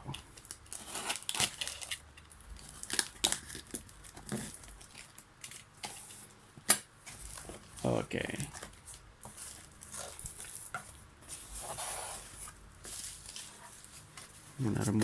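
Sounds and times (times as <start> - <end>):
packing material crinkling: 0.1 - 5.7.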